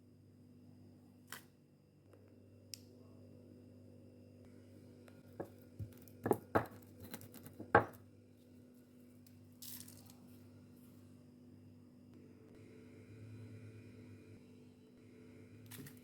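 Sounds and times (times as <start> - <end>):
kitchen knocks and clatters: 5.4 - 8.0.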